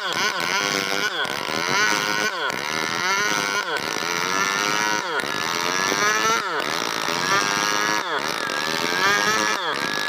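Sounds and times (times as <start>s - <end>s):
chainsaw cutting wood: 0.0s - 10.0s.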